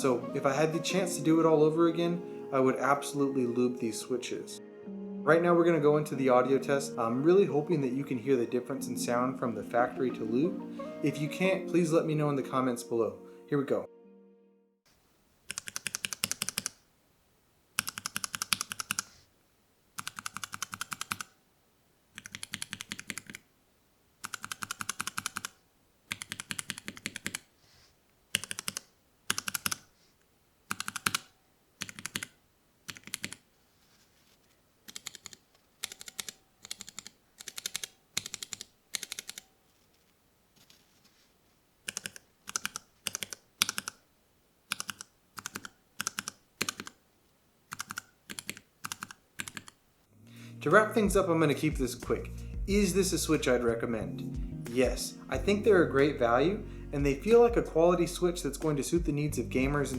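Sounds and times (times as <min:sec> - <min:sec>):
mechanical keyboard keystrokes: 0:15.5 - 0:16.8, 0:17.8 - 0:19.1, 0:20.0 - 0:21.3, 0:22.2 - 0:23.4, 0:24.2 - 0:27.5, 0:28.3 - 0:29.9, 0:30.7 - 0:32.3, 0:32.9 - 0:33.4, 0:34.9 - 0:39.4, 0:41.9 - 0:44.0, 0:44.7 - 0:47.0, 0:47.7 - 0:49.8.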